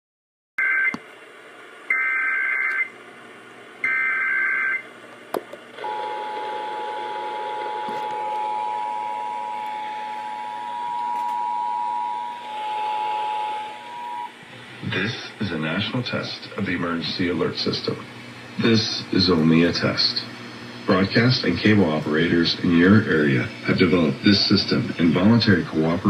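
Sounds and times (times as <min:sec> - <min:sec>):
radio static: 0:05.8 - 0:26.0.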